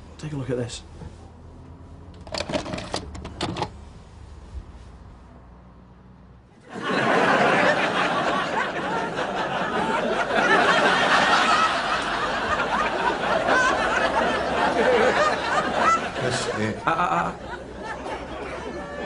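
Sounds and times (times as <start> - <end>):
audience laughter: 6.6 - 19.0.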